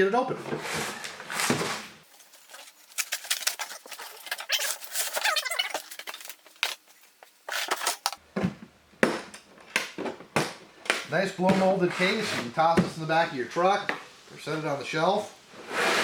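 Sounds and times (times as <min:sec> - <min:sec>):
plastic squeaking: 0:03.0 - 0:06.4.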